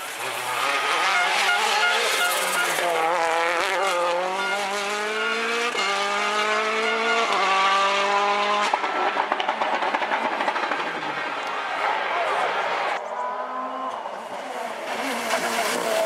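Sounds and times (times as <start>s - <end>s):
rally car engine accelerating: 0.0s - 11.8s, 13.2s - 16.0s
exhaust popping and crackling: 7.2s - 11.8s.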